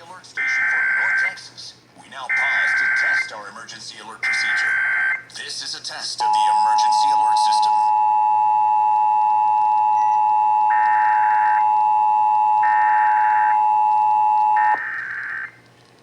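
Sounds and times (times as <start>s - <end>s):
two-tone alert signal: 6.3s - 15.5s.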